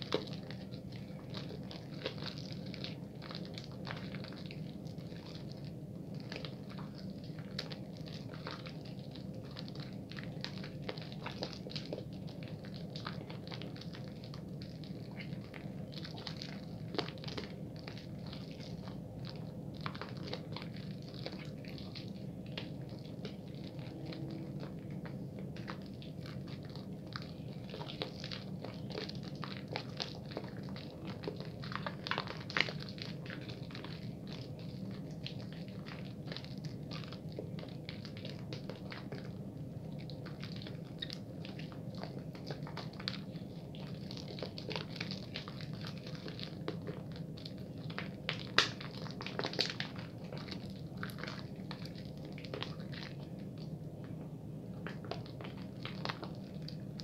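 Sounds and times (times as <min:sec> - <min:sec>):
soap lather squishing: 0:00.0 - 0:57.0
steady low hum: 0:00.0 - 0:57.0.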